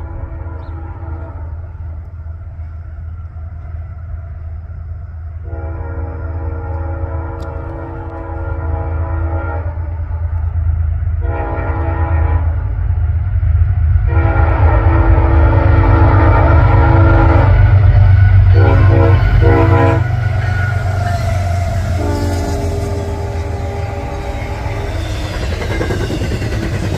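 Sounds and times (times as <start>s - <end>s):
locomotive air horn chord: 0.0s - 2.2s, 5.4s - 10.5s, 11.1s - 12.8s, 14.0s - 25.2s
locomotive engine rumbling: 0.0s - 26.9s.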